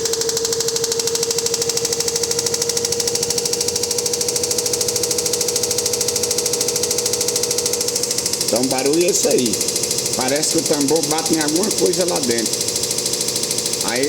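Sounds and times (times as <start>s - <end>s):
washer-dryer spinning with whine: 0.0s - 14.0s
fast even knocking: 5.4s - 14.0s.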